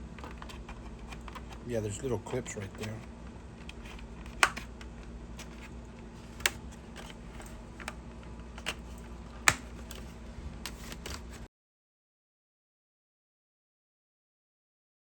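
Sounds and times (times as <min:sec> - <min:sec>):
plastic clips snapping: 0:03.7 - 0:04.7, 0:09.4 - 0:10.0.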